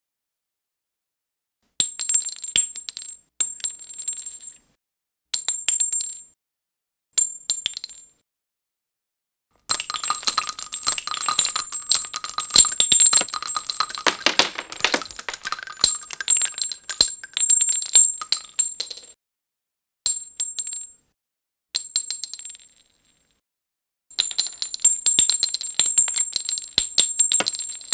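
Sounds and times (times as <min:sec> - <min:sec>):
rifle casings clinking on asphalt: 0:09.7 - 0:17.6, 0:18.2 - 0:18.5.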